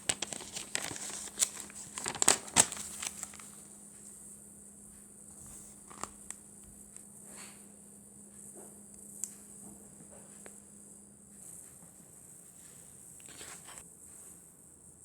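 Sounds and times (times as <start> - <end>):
paper rustling: 0.0 - 3.6, 5.4 - 6.4, 13.2 - 13.8.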